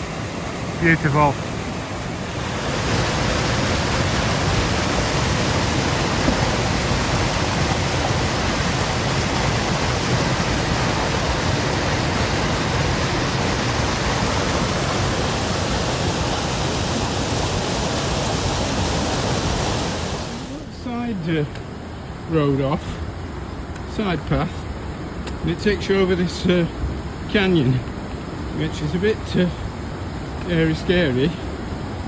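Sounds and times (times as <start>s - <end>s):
waterfall rushing: 0.0s - 32.0s.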